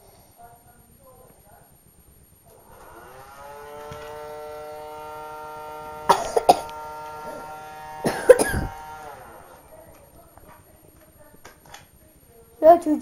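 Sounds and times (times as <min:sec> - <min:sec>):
vacuum cleaner motor whining: 0:02.5 - 0:10.0
short noisy bursts: 0:02.6 - 0:09.7.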